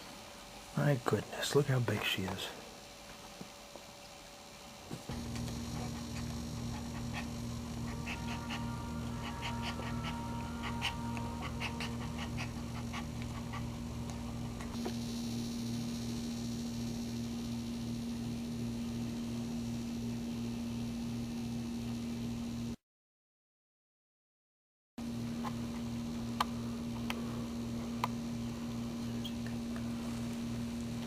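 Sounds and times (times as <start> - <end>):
pulsing electrical hum: 4.3 - 22.8, 25.0 - 31.0
thin high whine: 5.0 - 22.7
dog whimpering: 5.8 - 14.7.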